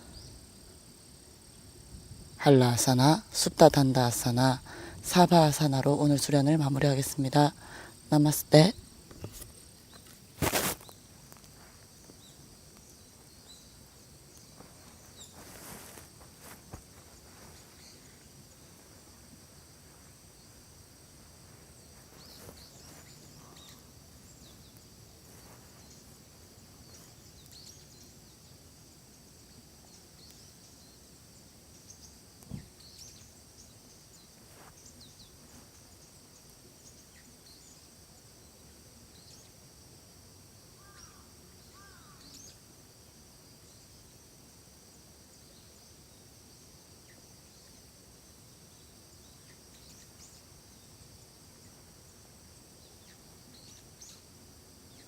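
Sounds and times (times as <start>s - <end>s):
brief rustle: 9.1s - 11.9s
high-pitched insect drone: 40.7s - 42.9s.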